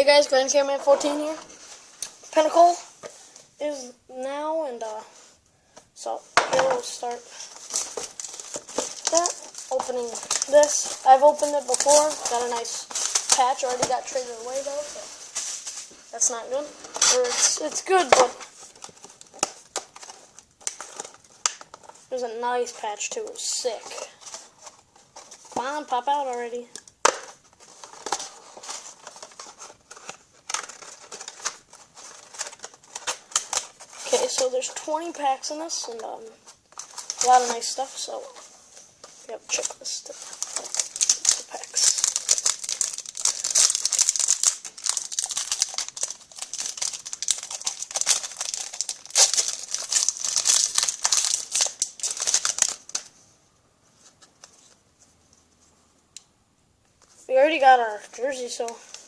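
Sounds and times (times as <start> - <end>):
foil wrappers crinkling: 6.5 - 22.2, 23.5 - 53.2.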